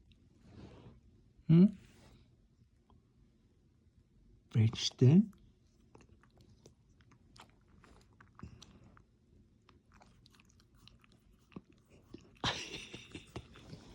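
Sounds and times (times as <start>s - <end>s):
dog chewing: 5.7s - 12.4s.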